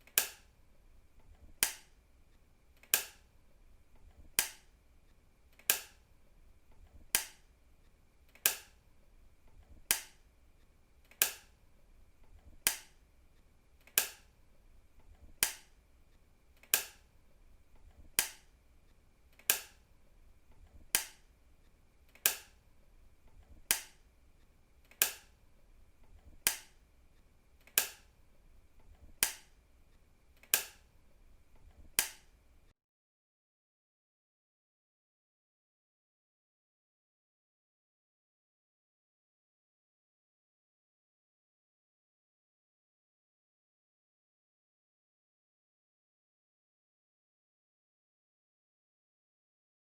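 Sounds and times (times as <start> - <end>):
faint steady hum: 0.0 - 32.8
switch clicking: 29.1 - 29.5, 32.0 - 32.3.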